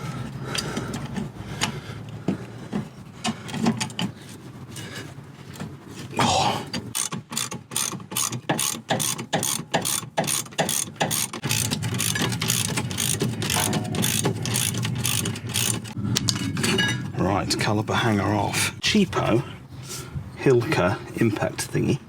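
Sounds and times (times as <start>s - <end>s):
ratchet tool clicking: 6.9s - 15.9s.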